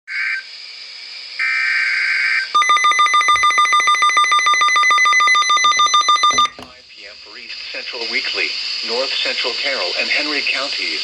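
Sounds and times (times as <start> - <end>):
pulsing two-tone alarm: 2.6 - 6.6.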